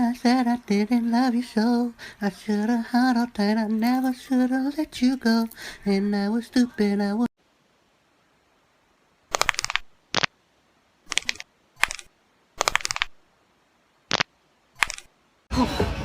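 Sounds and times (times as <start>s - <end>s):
rapid clicking bursts: 11.1s - 13.2s.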